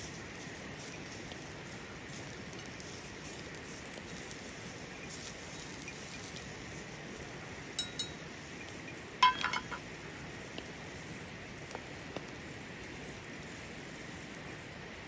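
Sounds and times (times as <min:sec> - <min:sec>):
steady hiss: 0:00.0 - 0:15.0
metal cookware clinking: 0:07.8 - 0:08.2, 0:09.2 - 0:09.9.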